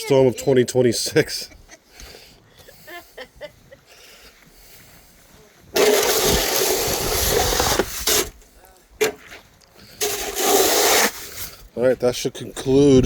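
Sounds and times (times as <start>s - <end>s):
snow shovel scraping pavement: 5.6s - 11.7s.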